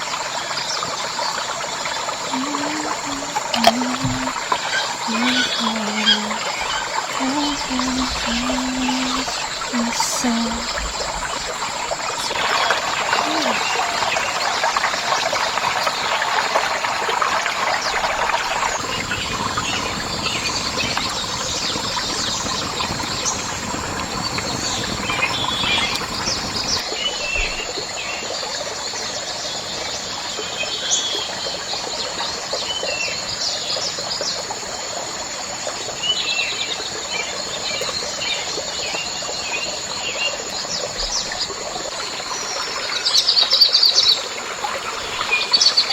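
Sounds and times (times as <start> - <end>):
steady hiss: 1.6 - 26.8
high-pitched insect buzz: 2.3 - 13.9
bird chirps: 18.5 - 27.5.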